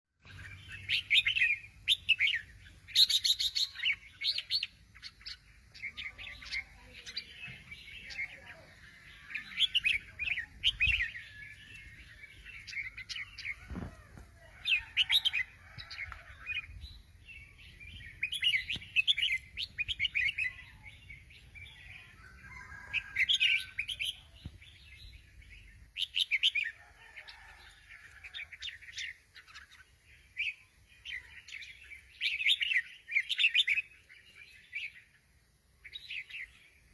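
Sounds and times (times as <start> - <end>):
bulbul chirping song: 0.2 - 26.8.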